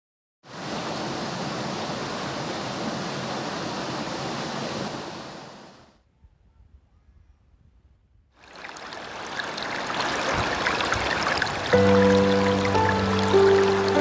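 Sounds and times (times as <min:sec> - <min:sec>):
river water rushing: 0:00.5 - 0:05.8, 0:08.4 - 0:14.0.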